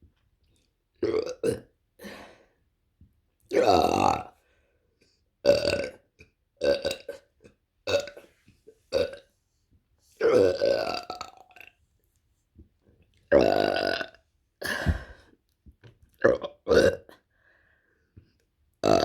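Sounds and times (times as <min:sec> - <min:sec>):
woman burping: 0:03.5 - 0:04.3, 0:13.3 - 0:15.2, 0:16.2 - 0:17.2.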